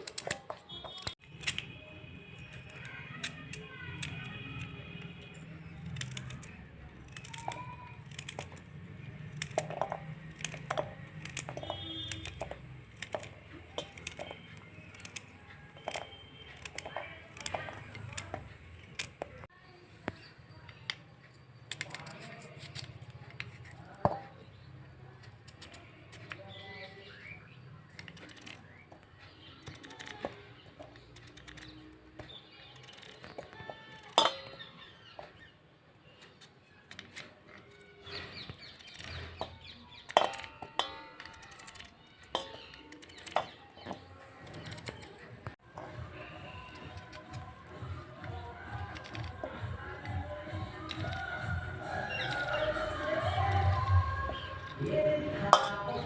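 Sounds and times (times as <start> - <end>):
birds chirping: 0.0 - 56.0
utensils knocking a pot: 9.2 - 19.4, 33.1 - 35.4, 38.2 - 45.0, 45.6 - 56.0.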